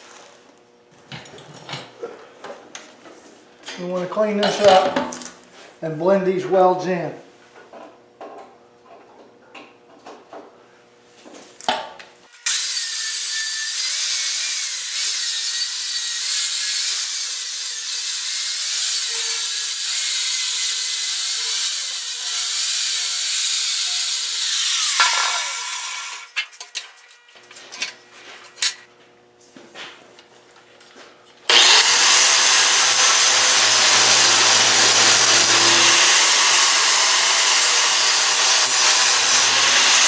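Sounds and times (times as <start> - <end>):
grinder grinding steel: 12.3 - 28.9, 31.5 - 40.0.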